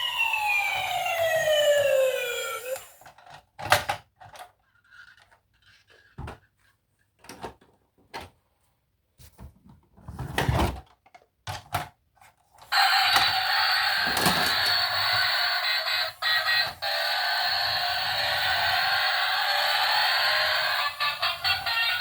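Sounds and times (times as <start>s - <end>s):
electronic toy sound: 0.0s - 3.0s, 12.7s - 22.0s
plastic toys clicking and knocking: 3.0s - 6.5s, 10.7s - 15.3s.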